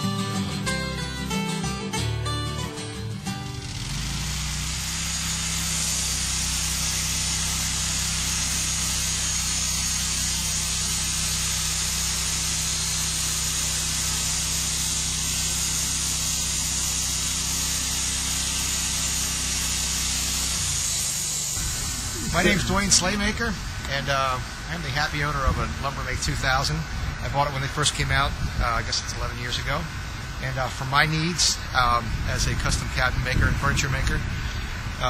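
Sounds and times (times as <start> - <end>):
sawmill engine drone: 2.8 - 35.0
band saw blade hissing: 3.5 - 24.7.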